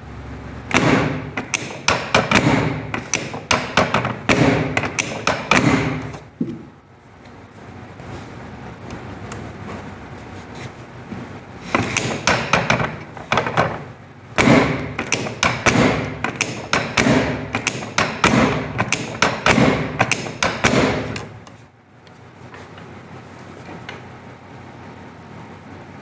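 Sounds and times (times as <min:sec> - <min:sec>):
table sections thudding: 0:00.7 - 0:06.7, 0:11.6 - 0:21.4.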